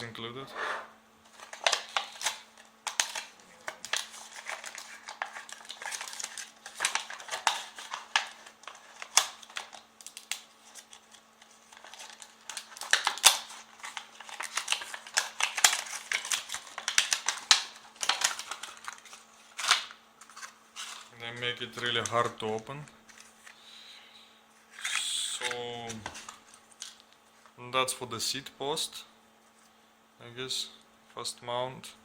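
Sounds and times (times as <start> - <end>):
faint steady hum: 0.0 - 32.0
plastic packaging crinkling: 1.3 - 23.6.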